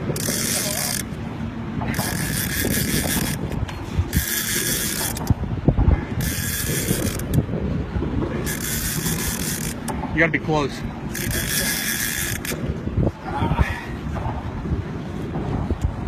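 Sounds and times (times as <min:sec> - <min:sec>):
fishing reel ratcheting buzz: 0:00.0 - 0:01.2, 0:01.9 - 0:05.4, 0:06.2 - 0:07.5, 0:08.4 - 0:10.0, 0:11.1 - 0:12.8
wind rumble on microphone: 0:00.0 - 0:16.0.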